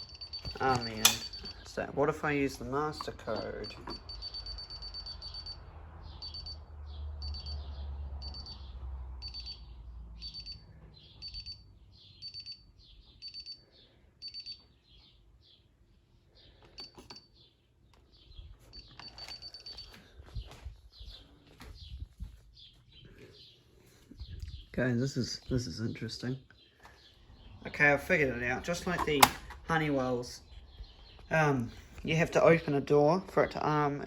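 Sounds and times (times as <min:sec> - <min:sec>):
alarm keypad beeping: 0:00.0 - 0:02.0, 0:02.6 - 0:08.6, 0:09.2 - 0:09.6, 0:10.2 - 0:13.6, 0:14.2 - 0:14.7, 0:18.7 - 0:20.0.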